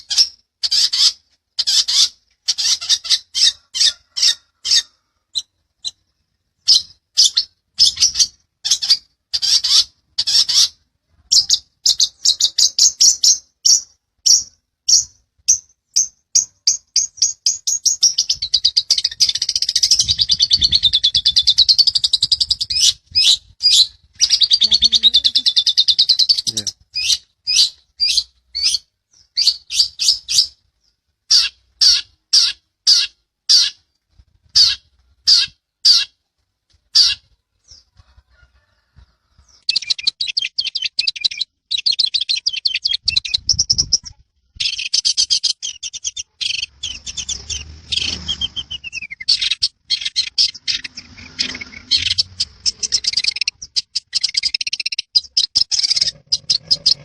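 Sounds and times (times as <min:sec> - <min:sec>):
shrike singing: 0:06.6 - 0:30.6, 0:44.6 - 0:57.0.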